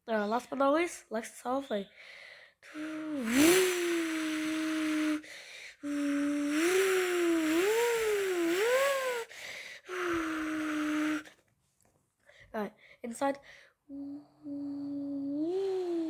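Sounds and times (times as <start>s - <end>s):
person imitating engine with mouth: 2.7s - 5.2s, 5.8s - 9.3s, 9.9s - 11.3s, 13.9s - 16.0s.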